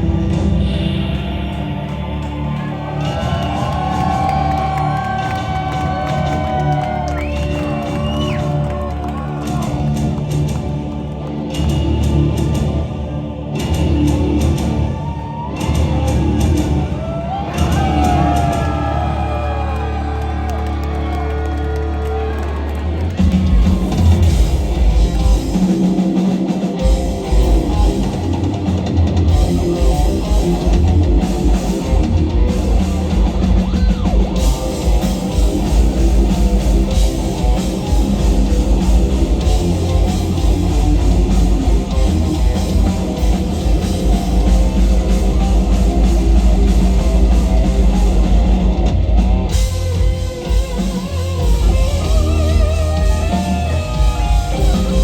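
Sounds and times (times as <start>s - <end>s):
drum kit with heavy kick drum: 0.0s - 21.2s, 23.0s - 55.0s
bass: 0.0s - 55.0s
distorted electric guitar: 21.1s - 55.0s.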